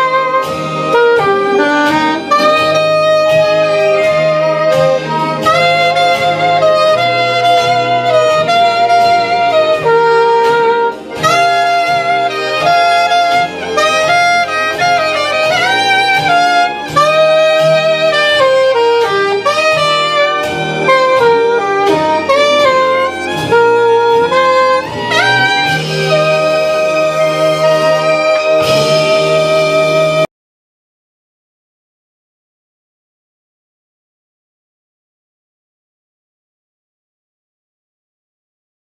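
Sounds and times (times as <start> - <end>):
bass accompaniment: 0.0 - 30.3
saxophone playing slow melody: 0.0 - 30.3.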